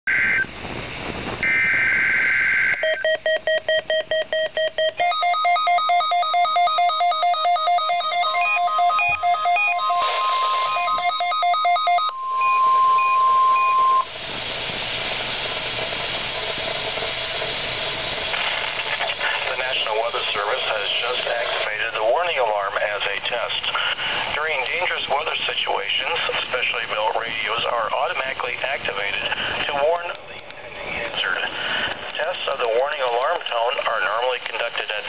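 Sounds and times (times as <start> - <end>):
radio static hiss: 0.1 - 3.0, 10.0 - 11.0, 14.0 - 35.0
digital header tones: 1.4 - 14.1
radio alert beeping rapidly: 1.4 - 14.1
steady warning alarm tone: 1.4 - 14.1
melodic beeping alarm: 2.8 - 14.1.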